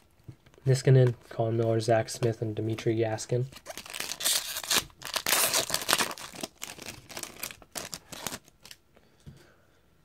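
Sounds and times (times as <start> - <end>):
wrapper crinkling and tearing: 3.6 - 8.8.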